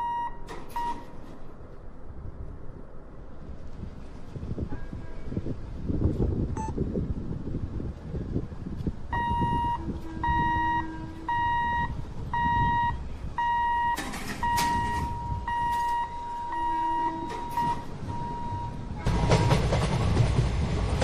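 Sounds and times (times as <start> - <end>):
level crossing hooter beeping: 0.0 - 1.1, 9.1 - 19.6.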